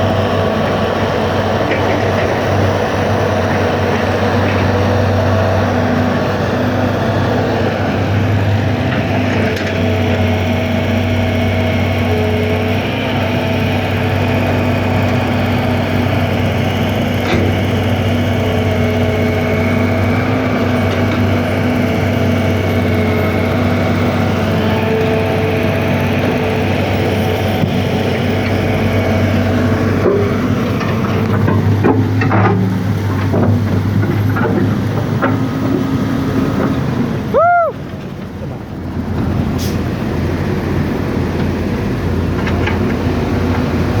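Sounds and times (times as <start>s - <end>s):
heavy engine running: 0.0s - 44.0s.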